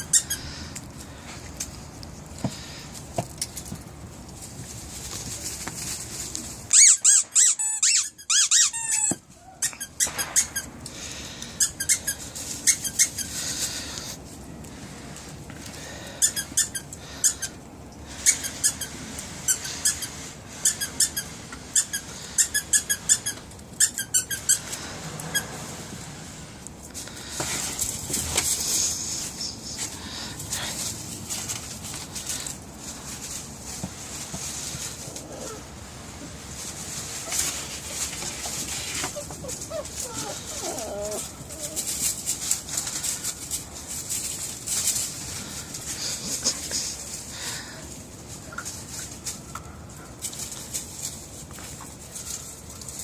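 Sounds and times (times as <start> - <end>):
squeaky dog toy squeaking: 0.0 - 0.4, 6.7 - 10.7, 11.6 - 13.3, 19.5 - 24.6.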